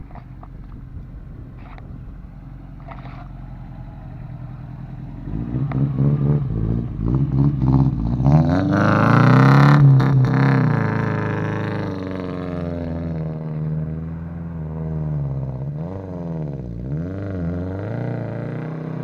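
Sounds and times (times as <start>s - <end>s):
car engine idling and revving: 0.0s - 19.0s.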